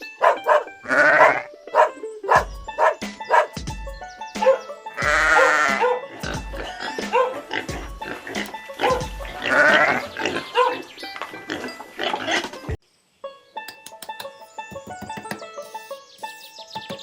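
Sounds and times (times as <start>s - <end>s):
sheep bleating: 0.3s - 1.9s, 5.0s - 7.7s, 8.8s - 10.4s
music with steady beat: 2.3s - 9.9s.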